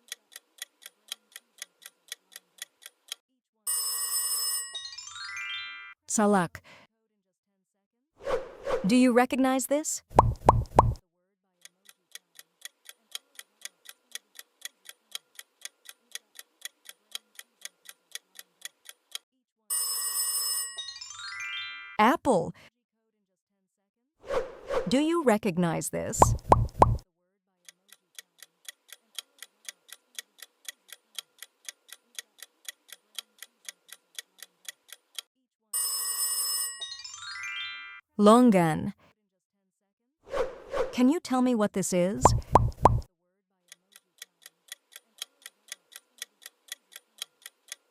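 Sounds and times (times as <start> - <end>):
clock ticking: 0.0 - 3.2, 10.1 - 11.0, 11.6 - 19.2, 26.2 - 27.0, 27.9 - 35.3, 42.2 - 43.1, 43.7 - 47.9
countdown timer ticking: 10.1 - 11.0, 26.2 - 27.0, 42.2 - 43.1.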